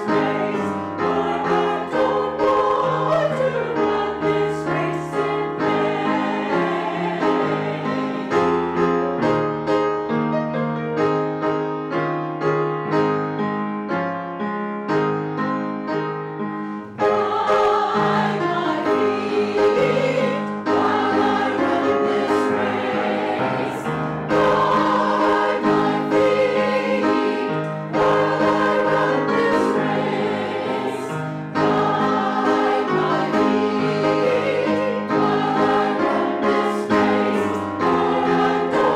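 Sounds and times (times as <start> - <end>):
group singing a hymn: 0.0 - 8.6, 16.9 - 38.9
piano playing: 0.0 - 38.9.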